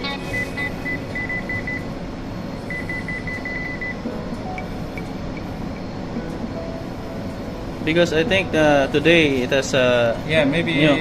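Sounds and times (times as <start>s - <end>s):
rapid electronic beeping: 0.0s - 2.0s, 2.6s - 5.9s.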